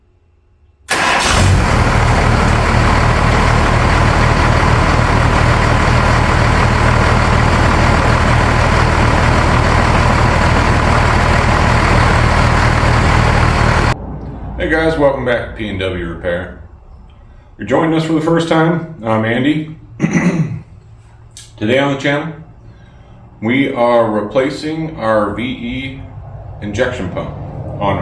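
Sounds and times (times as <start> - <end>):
diesel engine idling: 0.9 - 19.4.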